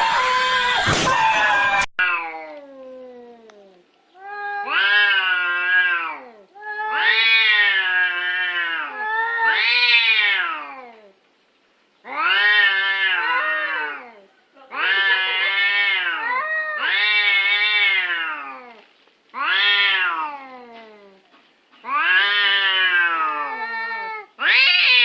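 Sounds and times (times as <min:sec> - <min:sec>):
screaming: 0:00.0 - 0:01.9
cat yowling: 0:04.2 - 0:10.8, 0:12.1 - 0:18.8, 0:19.4 - 0:21.2, 0:21.9 - 0:25.0.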